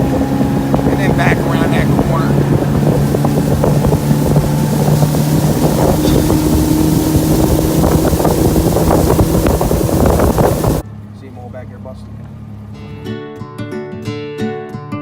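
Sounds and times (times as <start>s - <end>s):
wind buffeting microphone: 0.0s - 10.8s
outboard motor running: 0.0s - 13.0s.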